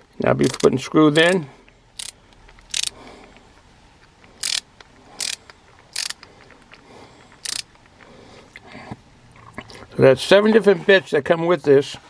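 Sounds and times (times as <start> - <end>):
screwdriver ratchet clicking: 0.4 - 1.4, 2.0 - 3.0, 4.4 - 6.3, 7.4 - 7.7.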